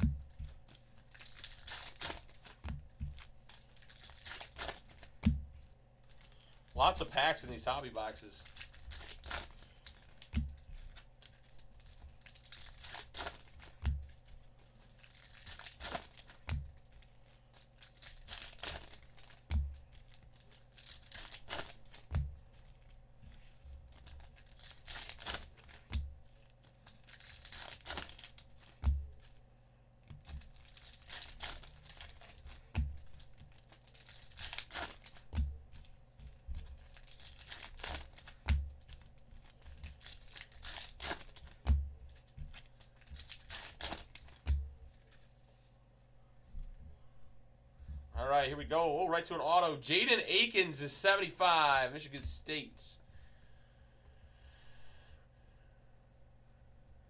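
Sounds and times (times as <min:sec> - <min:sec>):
card wrappers ripping and crinkling: 0:00.0 - 0:05.3, 0:06.0 - 0:22.7, 0:23.4 - 0:29.3, 0:30.2 - 0:35.4, 0:36.6 - 0:45.2.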